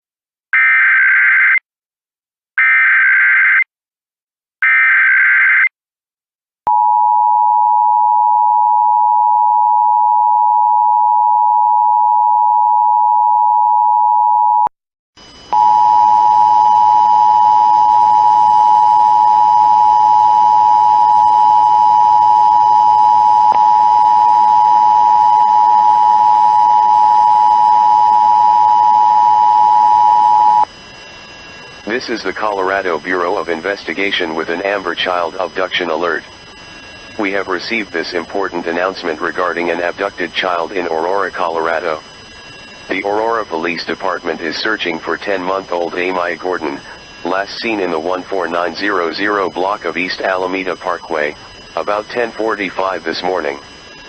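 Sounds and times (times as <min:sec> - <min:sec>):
two-tone attention signal: 0:15.5 - 0:30.7
digital data squawks: 0:30.4 - 0:54.0.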